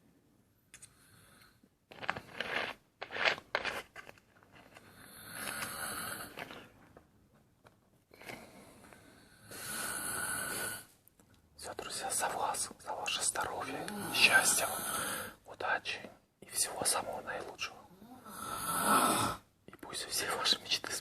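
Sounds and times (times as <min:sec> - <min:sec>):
man snoring: 0:05.0 - 0:06.3, 0:09.3 - 0:10.9, 0:13.8 - 0:15.4, 0:18.0 - 0:19.4.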